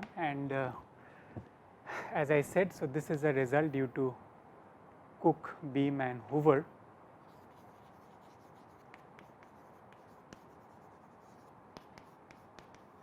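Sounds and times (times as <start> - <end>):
low steady hiss: 0.0 - 13.0
pen scratching and tapping: 7.3 - 13.0.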